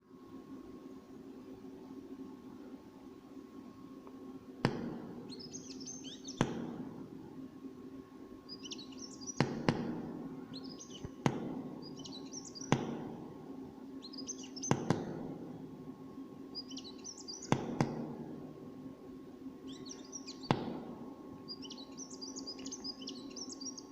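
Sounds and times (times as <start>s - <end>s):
steady low hum: 0.0s - 23.9s
bird chirping: 5.2s - 6.5s, 8.5s - 9.6s, 10.5s - 11.2s, 11.8s - 12.8s, 14.0s - 14.8s, 16.5s - 17.6s, 19.6s - 20.6s, 21.5s - 23.9s.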